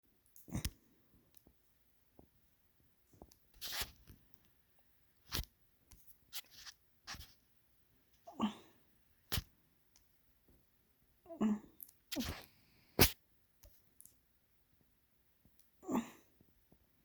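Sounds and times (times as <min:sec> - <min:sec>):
person sniffling: 0:12.1 - 0:13.2.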